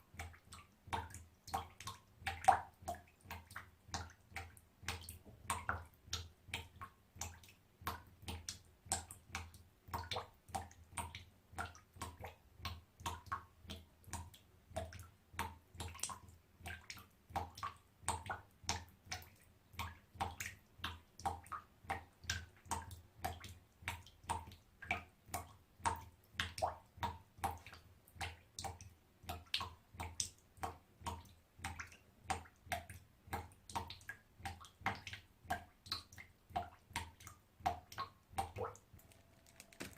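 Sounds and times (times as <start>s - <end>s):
water drops plinking into bathtub: 0.1s - 39.9s.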